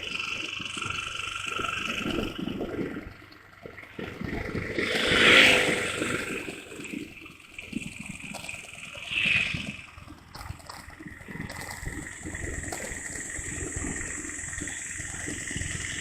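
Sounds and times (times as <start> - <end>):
motorcycle engine: 0.0 - 16.0
wind noise: 11.1 - 16.0.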